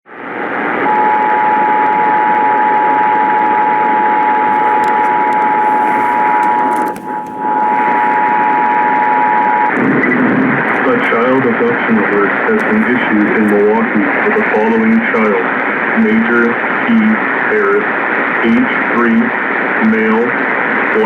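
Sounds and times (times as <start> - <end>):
two-tone alarm signal: 0.8 - 11.0
radio static hiss: 4.3 - 9.0, 9.6 - 21.0.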